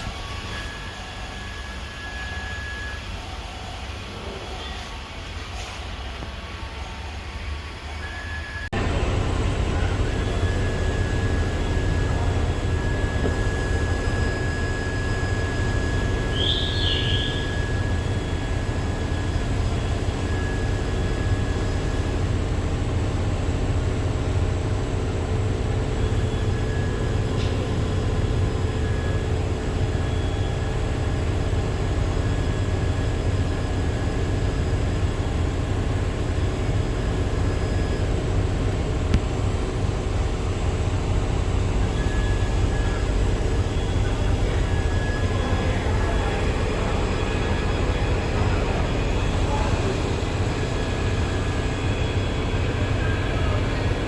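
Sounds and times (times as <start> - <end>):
faint hum tones: 0.0 - 54.0
low mechanical rumble: 8.6 - 54.0
short chirp: 16.3 - 17.7.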